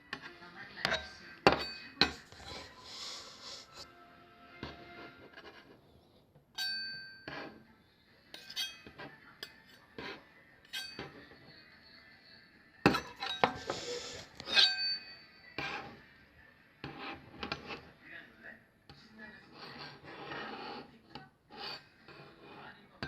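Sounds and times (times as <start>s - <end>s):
hard objects clinking: 12.9s - 15.2s.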